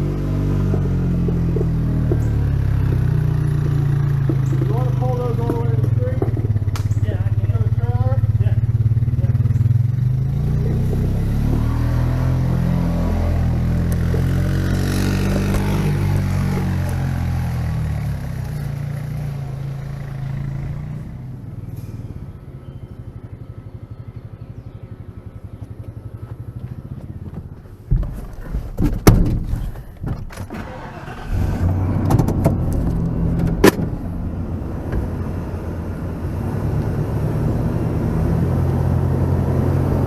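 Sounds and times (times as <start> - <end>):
engine running: 0.0 - 40.0.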